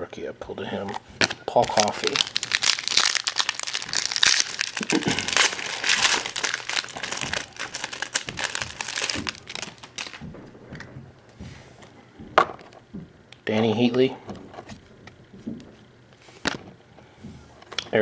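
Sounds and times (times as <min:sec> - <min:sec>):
wrapper crinkling and crackling: 0:00.7 - 0:11.1.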